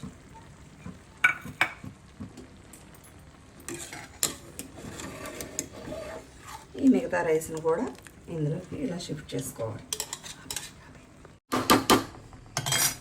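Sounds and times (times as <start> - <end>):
metal spoon clinking on pot: 9.9 - 10.7.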